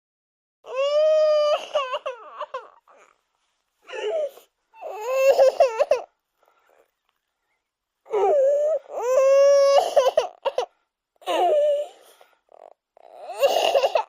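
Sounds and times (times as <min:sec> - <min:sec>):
baby crying: 0:00.7 - 0:03.1, 0:03.9 - 0:06.1, 0:08.1 - 0:12.0, 0:12.6 - 0:14.0.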